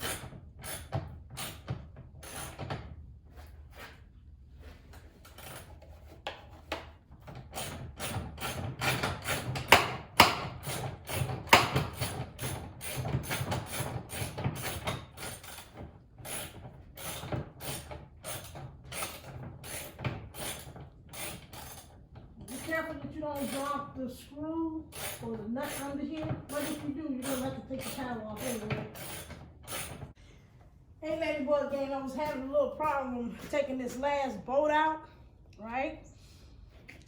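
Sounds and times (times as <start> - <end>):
hand tool clicking and scraping: 0.0 - 2.7, 4.9 - 23.8, 24.9 - 30.2.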